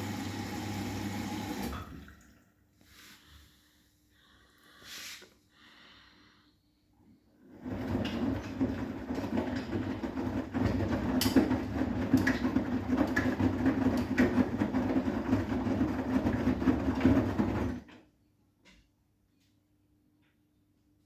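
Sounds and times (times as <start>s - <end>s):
washing machine drum rumbling: 7.6s - 17.9s.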